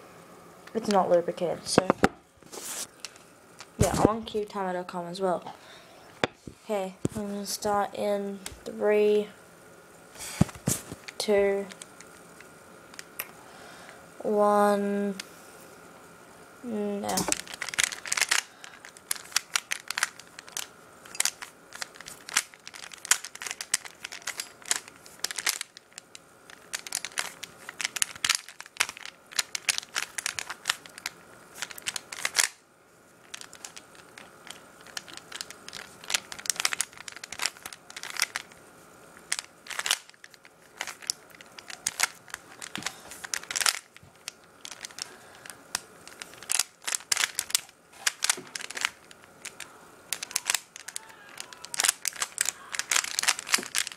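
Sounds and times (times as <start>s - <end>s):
puzzle cube clicking: 40.8s - 45.1s, 45.7s - 53.9s.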